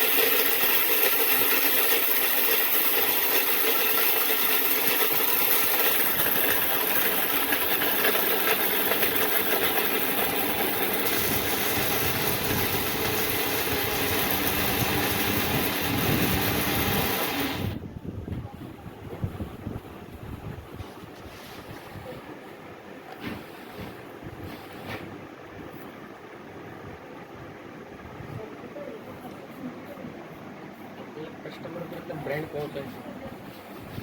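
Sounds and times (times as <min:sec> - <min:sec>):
mixer grinder motor whirring: 0:00.0 - 0:17.9.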